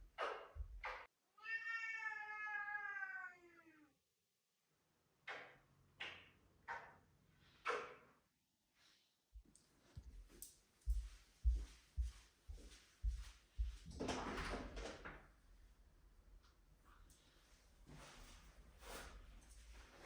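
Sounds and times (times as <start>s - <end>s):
cat meowing: 1.4s - 4.0s.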